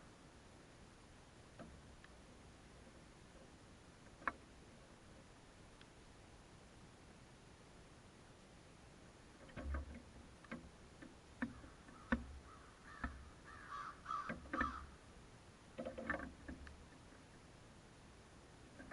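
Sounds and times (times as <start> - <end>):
crow cawing: 11.5 - 15.0.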